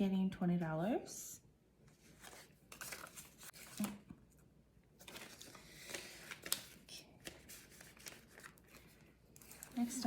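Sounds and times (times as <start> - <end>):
paper banknotes rustling: 2.0 - 4.1, 5.0 - 10.0.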